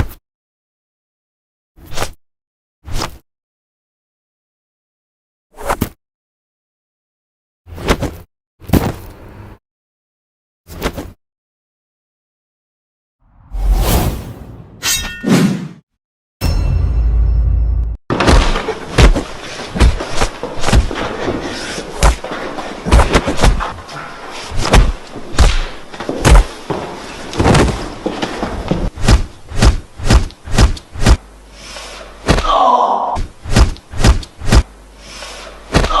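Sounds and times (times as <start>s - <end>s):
whooshes: 13.3s - 14.8s
thuds and slaps: 18.1s - 21.1s, 33.2s - 34.7s
punch and kick impacts: 29.0s - 31.2s, 33.2s - 34.7s.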